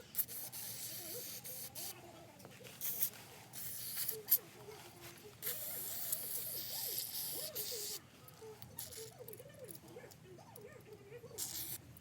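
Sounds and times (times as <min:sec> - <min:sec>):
spray can hissing: 0:00.1 - 0:01.9, 0:02.8 - 0:04.2, 0:05.4 - 0:08.0, 0:11.4 - 0:11.8.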